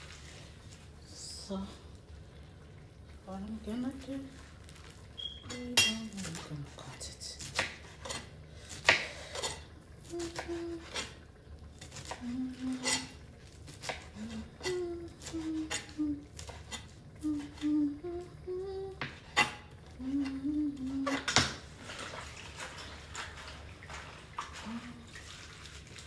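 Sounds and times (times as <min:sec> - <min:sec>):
woman humming: 0:10.0 - 0:11.0, 0:12.0 - 0:13.1, 0:14.1 - 0:16.4, 0:17.2 - 0:19.2, 0:19.9 - 0:21.3, 0:24.6 - 0:25.1.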